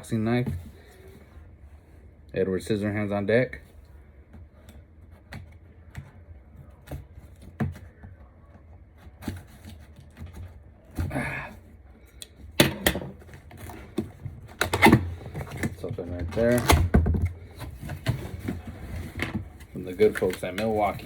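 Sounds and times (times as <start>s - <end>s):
cardboard rustling: 13.1s - 21.0s.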